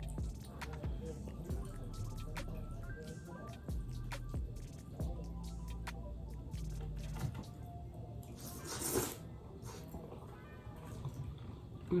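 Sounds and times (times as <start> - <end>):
soft background music: 0.0 - 12.0
person eating noodles: 8.4 - 9.2.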